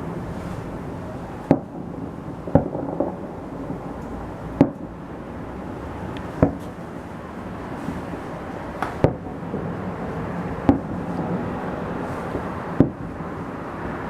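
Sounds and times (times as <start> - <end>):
fireworks bursting: 0.0 - 5.3, 6.2 - 13.3
steady low rumble: 0.0 - 14.0.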